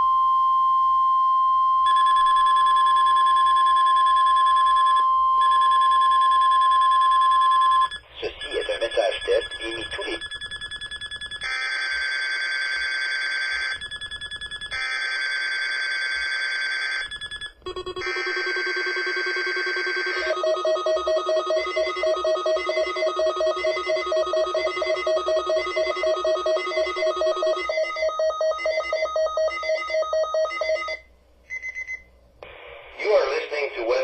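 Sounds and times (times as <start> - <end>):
weather radio electronic alarm: 0.0 - 10.2, 17.7 - 31.0
steady alarm tones: 0.0 - 31.0
rapid beeping: 1.9 - 11.5, 17.1 - 31.0.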